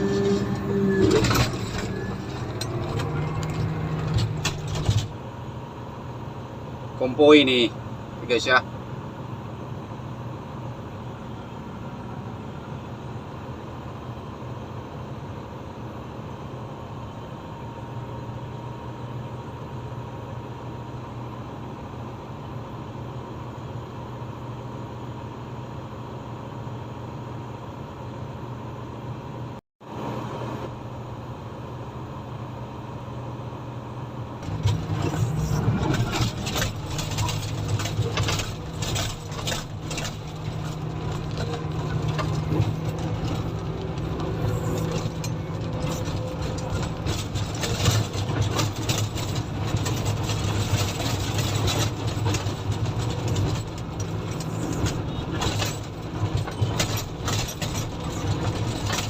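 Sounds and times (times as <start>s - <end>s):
rattling and clanking: 0.0s - 5.3s, 34.4s - 59.0s
diesel engine running: 0.0s - 59.0s.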